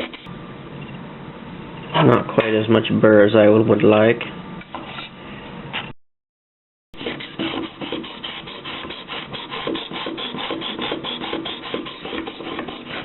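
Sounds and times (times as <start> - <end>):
sharpening stone rasping on knife: 7.0 - 13.0.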